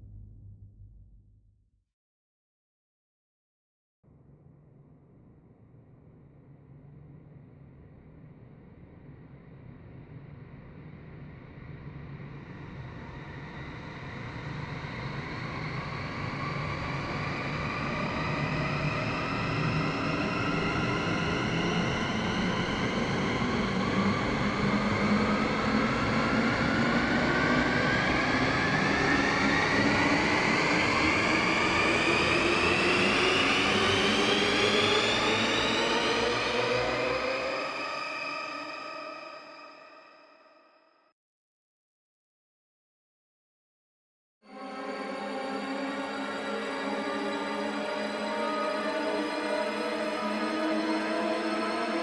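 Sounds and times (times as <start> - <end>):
synthesized rumbling riser: 0.0 - 1.5.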